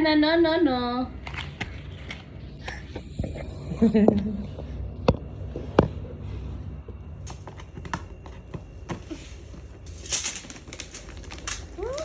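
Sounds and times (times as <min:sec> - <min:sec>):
paper rustling and tearing: 0:09.9 - 0:12.0.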